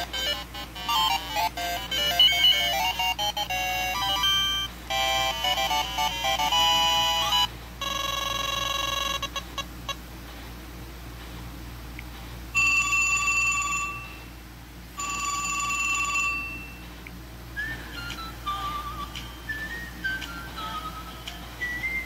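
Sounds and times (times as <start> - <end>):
short electronic ringtone melody: 0.0 - 9.4
electronic phone ringing tone: 0.0 - 9.7, 12.6 - 14.3, 15.0 - 16.8.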